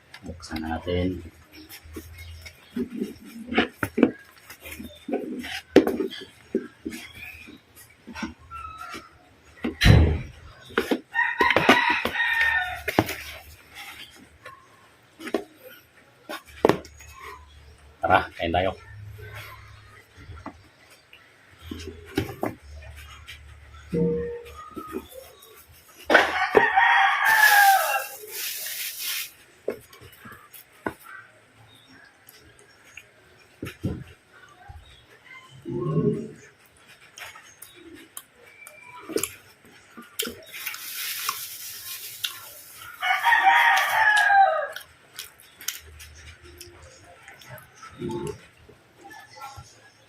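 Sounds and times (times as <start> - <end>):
rustling: 24.4 - 31.2, 39.1 - 46.9
rooster crowing: 26.2 - 28.2, 43.0 - 44.9.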